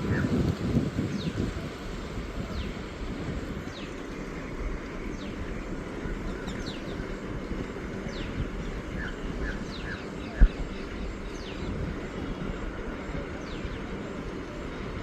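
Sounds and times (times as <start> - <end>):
low steady rumble: 0.0 - 15.0
small birds chirping: 2.4 - 11.9.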